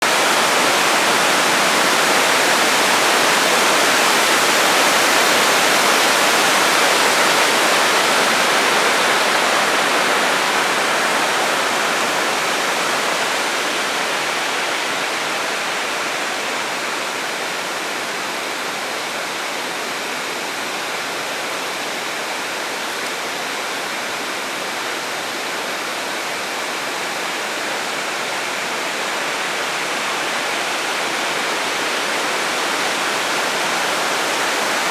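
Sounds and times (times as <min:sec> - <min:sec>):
waterfall rushing: 0:00.0 - 0:18.0, 0:27.4 - 0:34.9.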